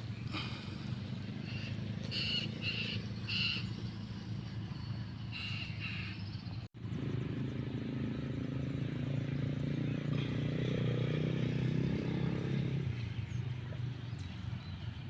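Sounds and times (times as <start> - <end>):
bird calling: 0.0 - 6.7
steady low hum: 0.0 - 10.9.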